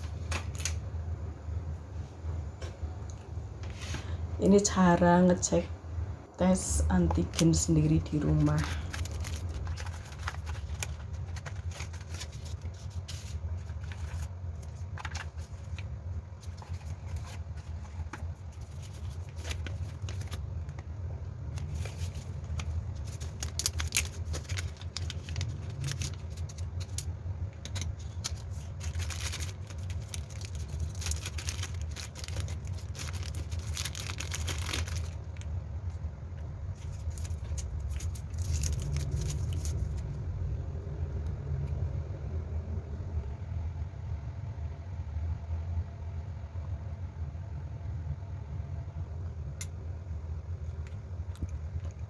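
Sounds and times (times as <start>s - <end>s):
steady low hum: 0.0s - 52.0s
packaging crackling: 7.3s - 35.5s, 36.7s - 40.0s.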